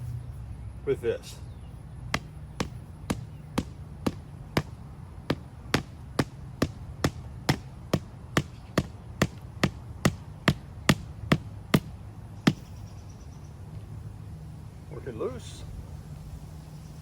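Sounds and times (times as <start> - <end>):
hammering a stake into ground: 2.0 - 12.8.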